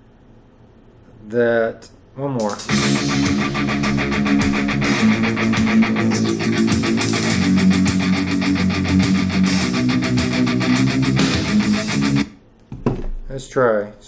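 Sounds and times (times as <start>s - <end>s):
rock song through portable speaker: 2.4s - 12.4s.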